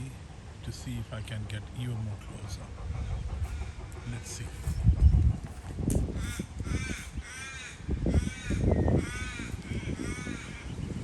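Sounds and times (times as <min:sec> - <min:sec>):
low rumbling noise: 0:00.0 - 0:11.0
crow cawing: 0:06.2 - 0:10.7.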